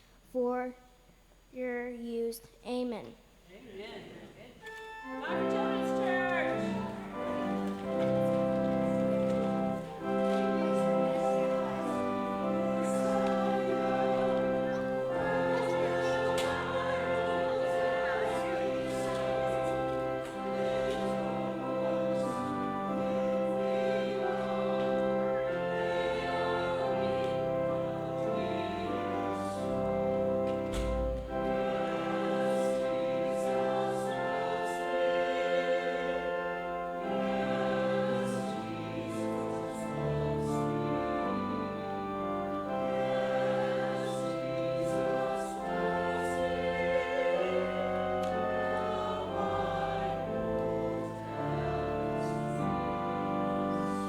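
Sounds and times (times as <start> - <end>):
choir singing a hymn: 4.6 - 54.0
instrumental accompaniment: 4.6 - 54.0.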